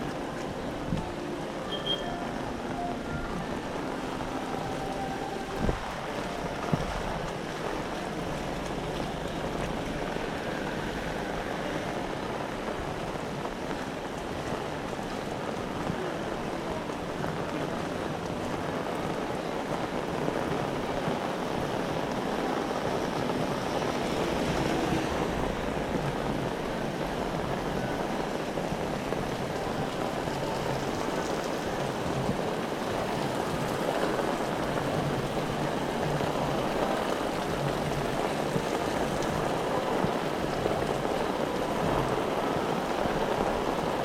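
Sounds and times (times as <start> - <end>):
heavy rain: 0.0 - 44.0
strong wind: 0.0 - 44.0.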